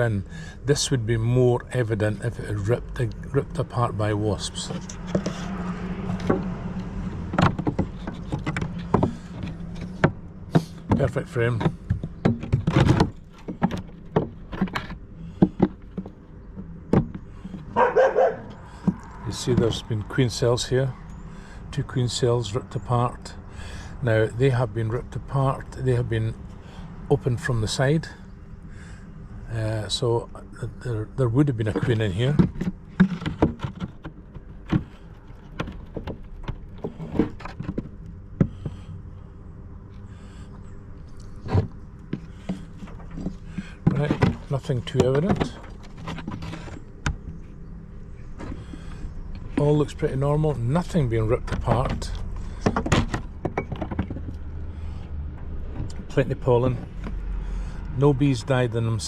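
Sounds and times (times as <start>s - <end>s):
wooden frames knocking: 4.9s - 18.1s, 41.4s - 47.3s, 51.3s - 54.5s.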